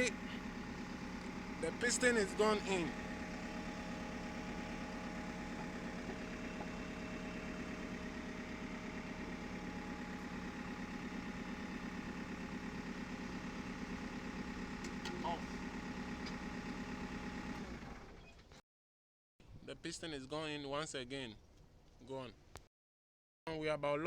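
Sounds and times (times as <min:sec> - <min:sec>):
diesel engine idling: 0:00.0 - 0:18.2.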